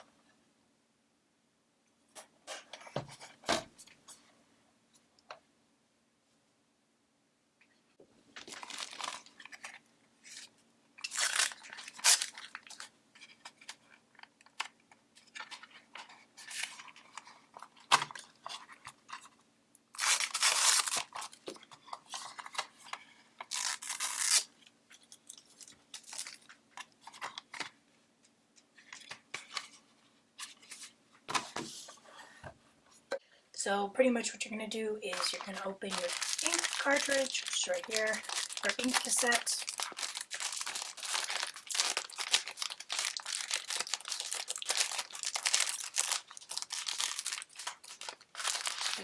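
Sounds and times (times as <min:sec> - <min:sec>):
packaging crinkling and tearing: 0:08.4 - 0:19.3, 0:19.9 - 0:27.7, 0:35.1 - 0:49.0.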